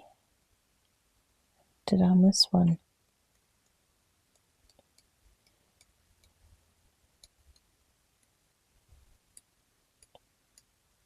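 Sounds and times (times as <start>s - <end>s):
pencil and protractor ticking on paper: 3.1s - 6.6s, 7.2s - 8.4s, 9.3s - 10.7s.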